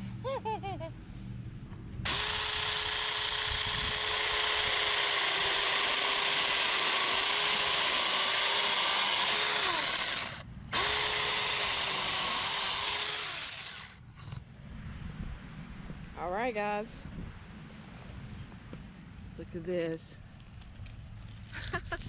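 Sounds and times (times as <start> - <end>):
electric chainsaw cutting wood: 2.1 - 14.0.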